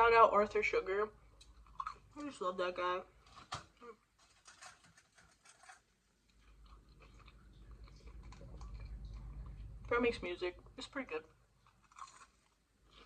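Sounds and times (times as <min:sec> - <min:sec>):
crunchy chewing: 0:01.4 - 0:02.1, 0:04.2 - 0:09.9, 0:11.6 - 0:13.0.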